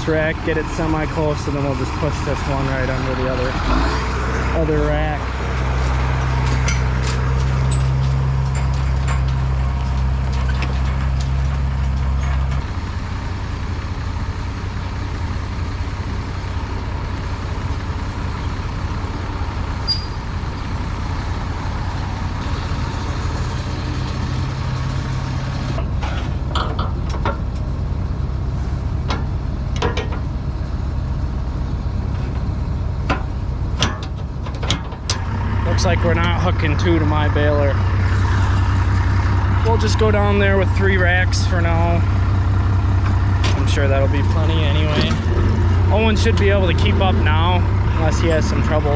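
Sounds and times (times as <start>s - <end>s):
tractor engine running: 0.0s - 48.9s.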